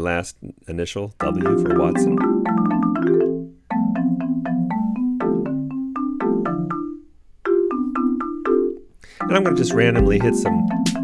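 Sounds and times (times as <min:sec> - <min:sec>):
synthesized marimba melody: 0:01.2 - 0:11.0
chords: 0:07.7 - 0:11.0.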